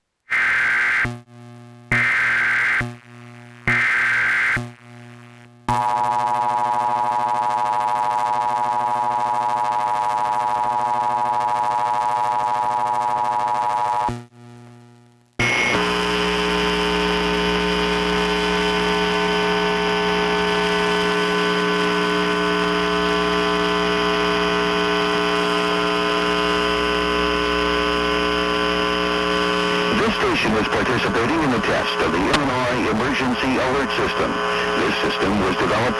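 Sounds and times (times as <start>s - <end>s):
harsh buzzy tone: 0.2s - 14.6s, 15.4s - 35.9s
person speaking a message: 29.9s - 35.9s.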